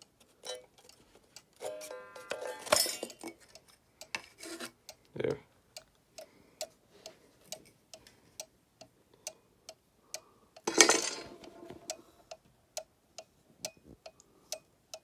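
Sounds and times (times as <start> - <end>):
clock ticking: 0.0 - 4.2, 4.9 - 15.0
handling noise: 10.7 - 11.9.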